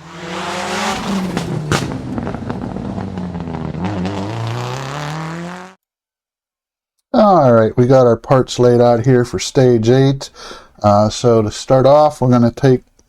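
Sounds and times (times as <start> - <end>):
race car engine revving: 0.0 - 5.8
sharp engine cracks: 1.4 - 2.4.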